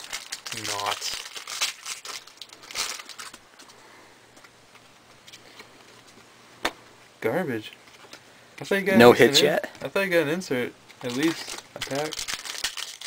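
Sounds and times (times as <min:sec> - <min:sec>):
foil wrapper crinkling: 0:00.0 - 0:03.8, 0:11.0 - 0:13.0.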